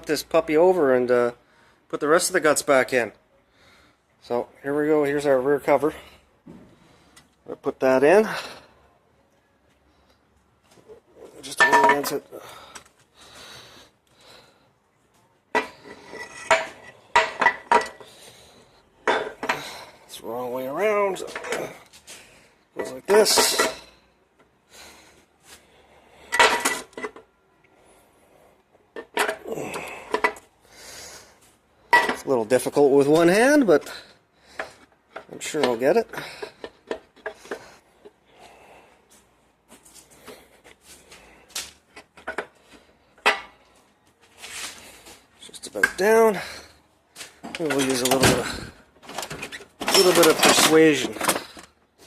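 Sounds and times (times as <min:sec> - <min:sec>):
metal-on-metal clanks: 0:11.6 - 0:12.2
metal clicks and scraping: 0:47.2 - 0:51.8.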